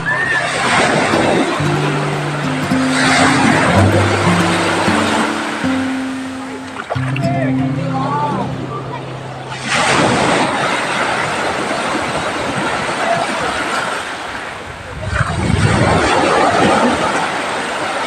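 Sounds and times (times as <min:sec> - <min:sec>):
sea waves breaking: 0:00.0 - 0:18.0.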